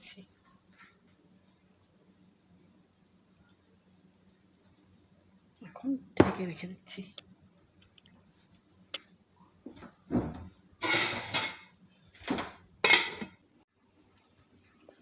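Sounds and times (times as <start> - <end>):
pot and lid clinking: 10.8 - 13.4.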